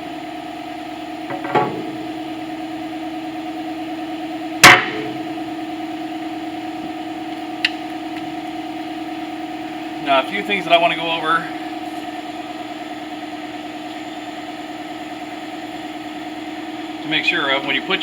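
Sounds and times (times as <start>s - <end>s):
machinery hum: 0.0s - 18.0s
metal clank: 1.2s - 2.7s, 4.6s - 5.5s.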